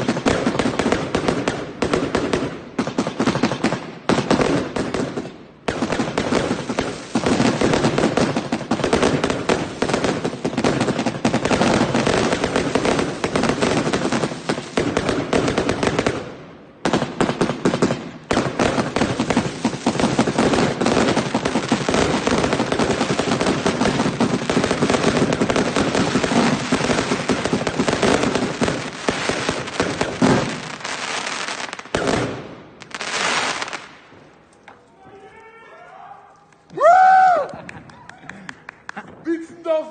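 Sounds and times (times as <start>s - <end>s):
fireworks bangs and crackles: 0.0s - 34.8s.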